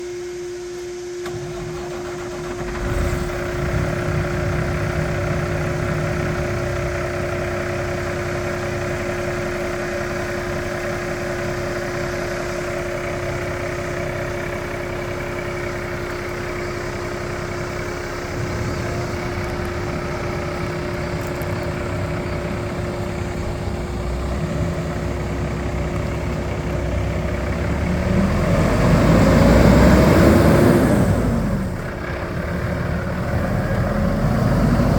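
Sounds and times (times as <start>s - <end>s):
engine revving: 1.3s - 8.8s, 17.4s - 34.9s
diesel truck engine idling: 1.3s - 34.9s.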